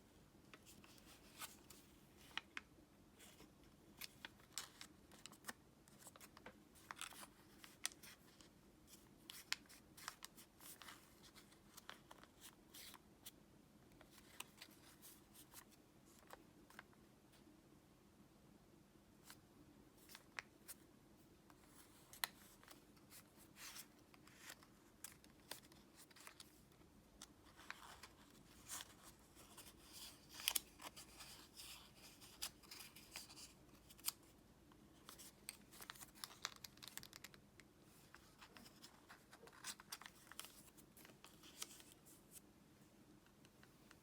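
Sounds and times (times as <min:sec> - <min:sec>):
paper being folded and creased: 0:03.2 - 0:13.0, 0:21.6 - 0:26.6, 0:27.4 - 0:34.2, 0:35.0 - 0:42.0.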